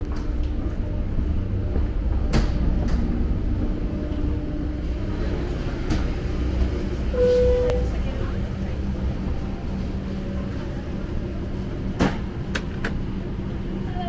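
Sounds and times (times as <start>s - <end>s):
short beep: 7.2s - 7.9s.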